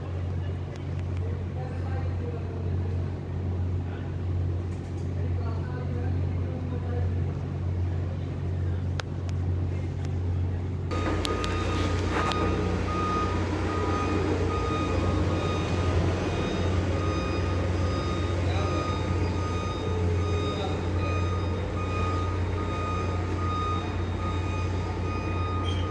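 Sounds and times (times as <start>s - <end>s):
truck engine running: 10.8s - 25.9s
high warning beep: 10.9s - 25.9s.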